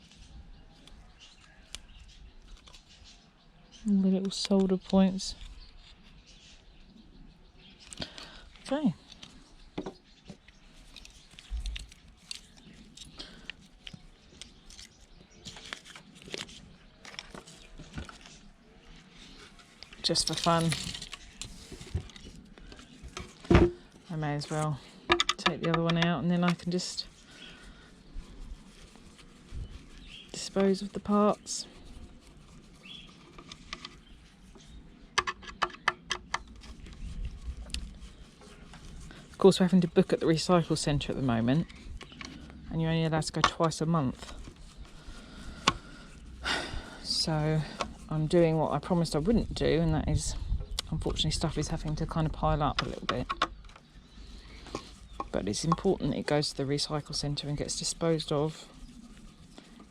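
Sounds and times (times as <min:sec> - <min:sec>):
dull low thump: 0:23.4 - 0:23.8
small parts clicking and tapping: 0:25.1 - 0:26.2, 0:35.2 - 0:36.6.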